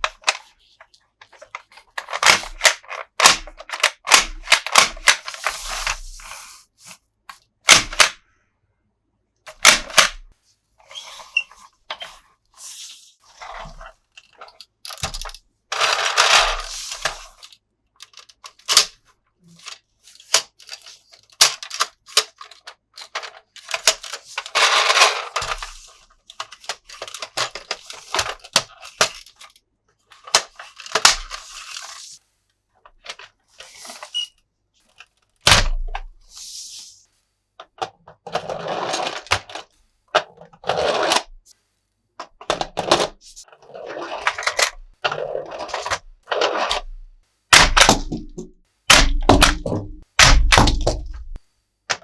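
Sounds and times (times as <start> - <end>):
plastic toys clicking and knocking: 0.0 - 6.2, 7.3 - 8.2, 9.5 - 10.2, 13.6 - 32.2, 32.8 - 34.2, 37.6 - 41.6, 42.2 - 52.0
plastic toys scraping: 0.0 - 7.0, 10.8 - 32.2, 32.9 - 35.2, 35.9 - 41.6, 42.2 - 47.0.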